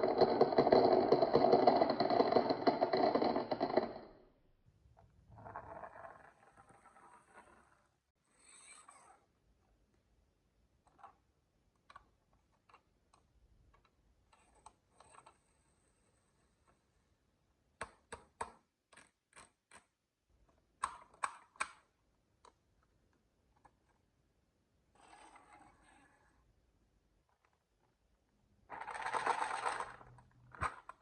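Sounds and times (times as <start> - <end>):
marbles clicking on track: 0.0 - 4.1.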